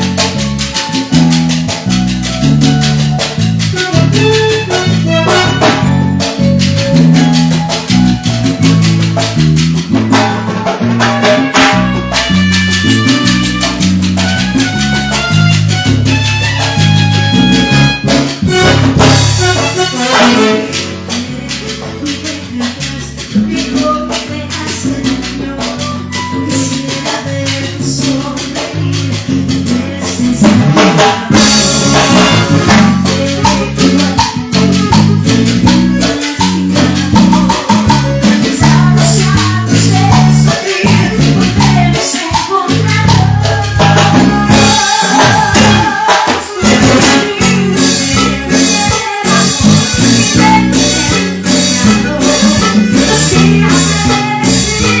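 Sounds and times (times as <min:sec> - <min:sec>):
shaker: 0:00.0 - 0:10.3, 0:11.6 - 0:55.0
drum kit: 0:00.0 - 0:55.0
live band playing dance music: 0:00.0 - 0:55.0.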